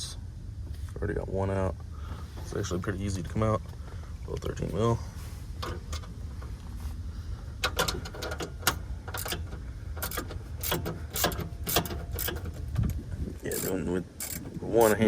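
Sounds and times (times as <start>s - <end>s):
ratchet wrench clicking: 7.7s - 12.6s, 13.5s - 15.0s.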